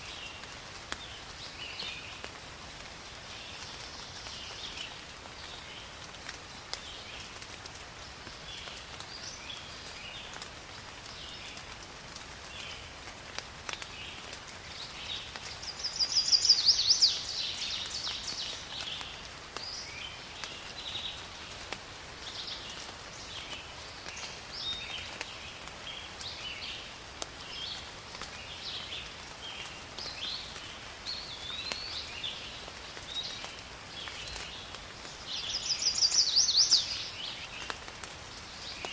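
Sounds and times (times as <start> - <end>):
soft steady hiss: 0.0 - 38.9
loud rapid bird song: 13.9 - 21.5, 22.2 - 38.9
birds chirping: 14.2 - 21.4, 28.5 - 37.8.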